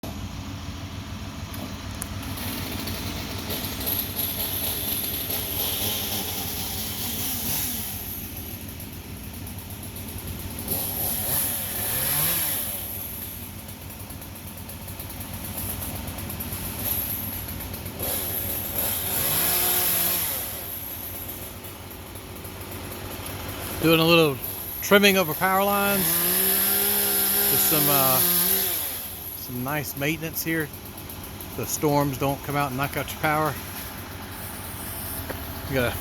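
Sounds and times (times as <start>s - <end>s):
engine running: 0.0s - 36.0s.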